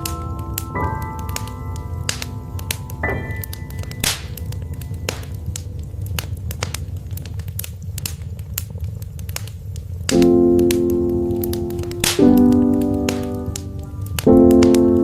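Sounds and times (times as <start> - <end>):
soft piano note: 0.0 - 6.6
wood fire crackling: 0.0 - 15.0.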